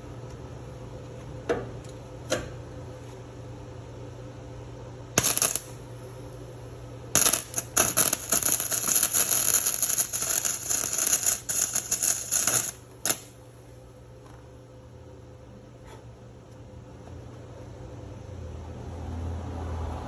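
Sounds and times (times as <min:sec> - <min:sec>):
steady low hum: 0:00.0 - 0:18.4
welder arc crackling: 0:05.2 - 0:05.9, 0:07.2 - 0:13.4.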